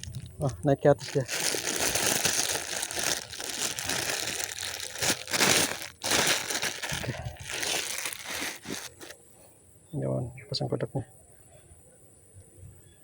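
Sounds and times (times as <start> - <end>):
crinkling crunching rustle: 0.0 - 9.2.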